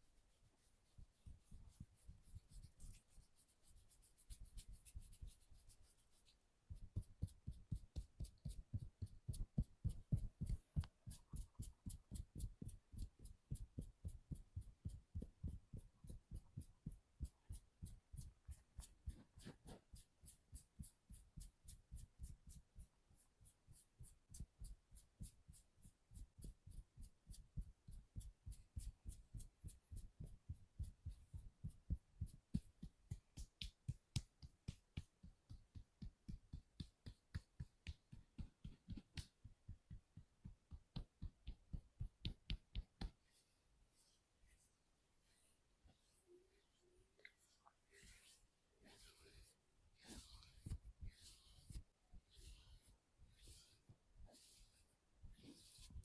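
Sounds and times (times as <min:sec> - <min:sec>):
rubbing sound: 0:00.0 - 0:39.5, 0:40.9 - 0:56.0
hands thudding percussive massage: 0:27.6 - 0:43.3.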